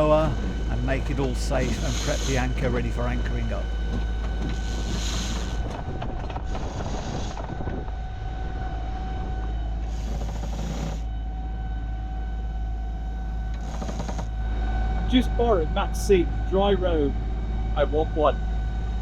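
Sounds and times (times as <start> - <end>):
faint steady hum: 0.0 - 19.0
wind rumbling on microphone: 3.6 - 11.2.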